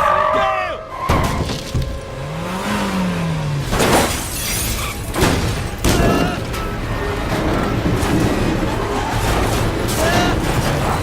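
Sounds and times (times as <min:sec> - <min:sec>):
car crash impacts: 0:01.0 - 0:02.3, 0:03.5 - 0:11.0
glass shattering: 0:03.6 - 0:06.4.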